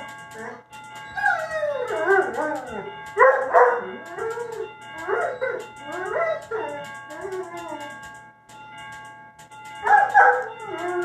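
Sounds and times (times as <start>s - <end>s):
musical doorbell chime: 0.0s - 11.0s
dog howling: 0.4s - 7.9s.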